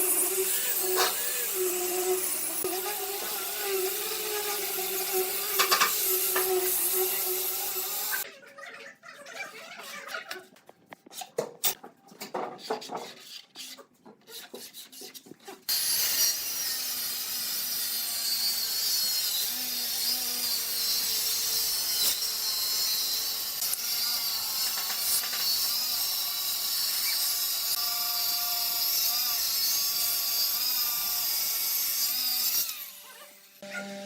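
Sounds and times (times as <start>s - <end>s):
power tool hissing on wood: 0.0s - 8.2s
scraping and knocking on wood: 11.4s - 13.4s.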